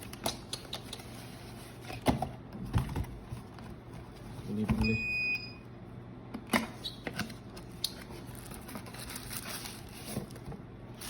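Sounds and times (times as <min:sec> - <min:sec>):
cardboard and plastic rustling: 0:07.3 - 0:11.0.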